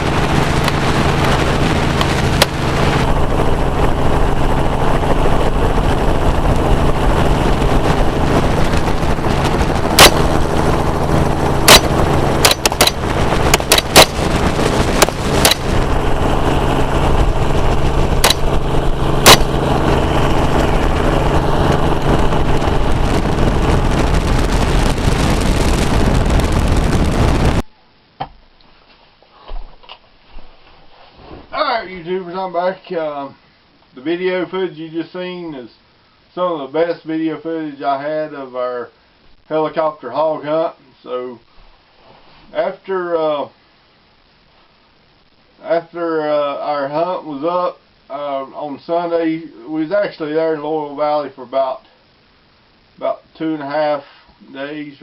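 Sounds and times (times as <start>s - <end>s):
helicopter engine and rotor: 0.0s - 24.3s
gunshots: 9.9s - 10.6s, 11.6s - 15.9s, 18.2s - 19.7s.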